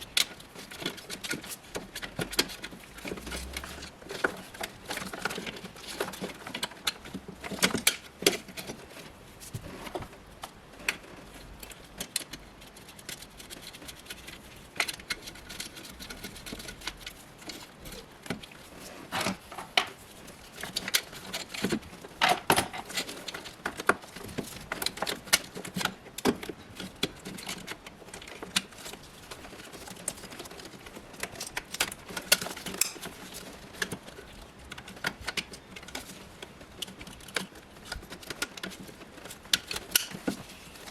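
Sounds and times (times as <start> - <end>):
metallic clicks of hand tools: 32.7 - 33.1.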